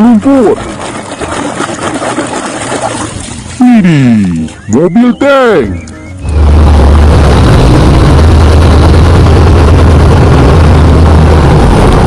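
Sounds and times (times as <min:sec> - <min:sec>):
heavy engine rumbling: 0:03.4 - 0:12.0.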